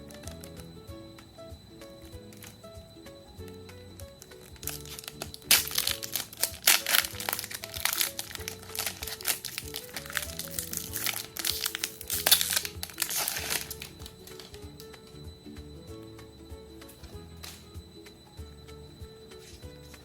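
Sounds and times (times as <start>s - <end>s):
background music: 0.0s - 20.0s
foil wrapper crinkling: 4.2s - 14.6s.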